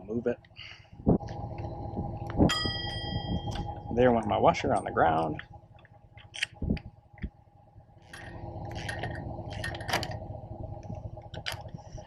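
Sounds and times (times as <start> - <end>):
steady hum: 0.0 - 12.0.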